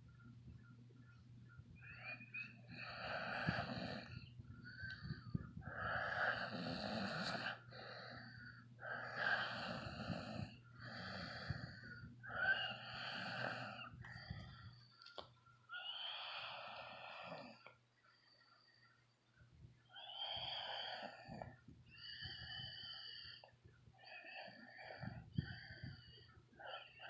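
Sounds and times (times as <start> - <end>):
man snoring: 2.8 - 4.1, 5.8 - 7.6, 8.9 - 11.7, 12.4 - 13.9.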